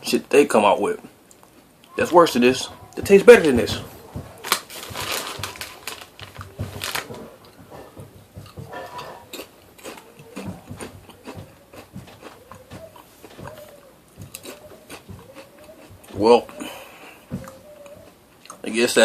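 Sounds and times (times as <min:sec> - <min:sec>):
potato chips crunching: 0:03.1 - 0:07.6, 0:08.5 - 0:13.4, 0:14.2 - 0:16.4.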